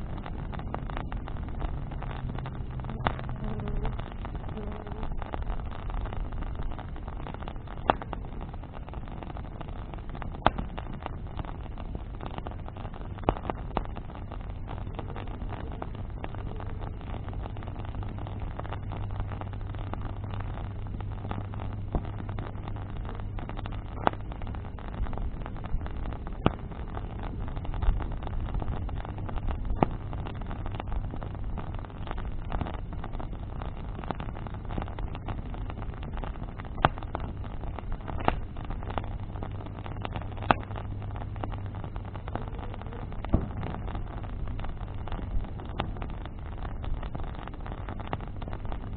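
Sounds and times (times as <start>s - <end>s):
bonfire rushing: 0.0s - 48.9s
fire crackles and pops: 0.0s - 48.9s
low steady hum: 0.0s - 48.9s.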